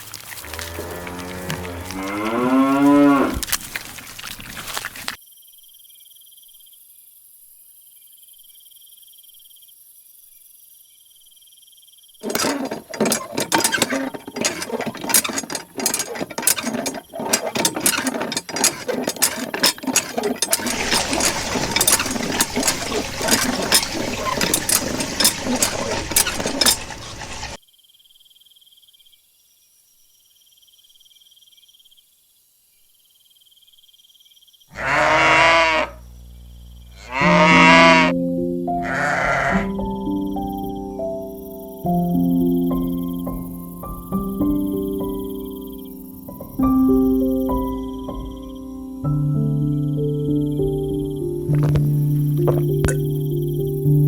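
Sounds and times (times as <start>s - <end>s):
crickets chirping: 0.0s - 28.8s, 36.0s - 37.0s, 39.6s - 54.0s
animal bleat: 0.4s - 3.5s, 34.7s - 36.0s, 37.0s - 38.2s, 38.8s - 39.8s
loud dense clicking and crackling: 12.3s - 27.6s.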